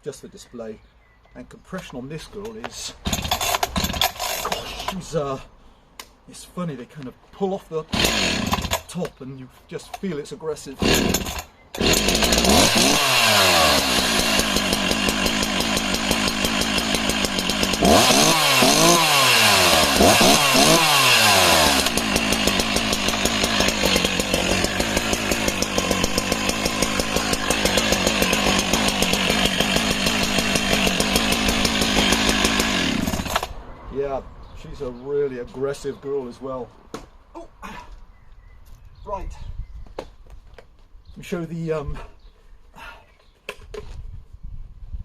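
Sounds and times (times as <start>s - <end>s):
chainsaw revving: 2.9s - 5.2s, 7.9s - 9.0s, 10.8s - 33.6s.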